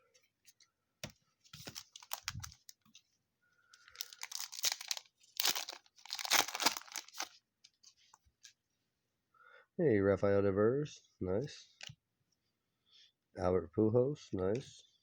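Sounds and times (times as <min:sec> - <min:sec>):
foil wrapper tearing and crinkling: 0:01.6 - 0:02.7, 0:03.8 - 0:07.3.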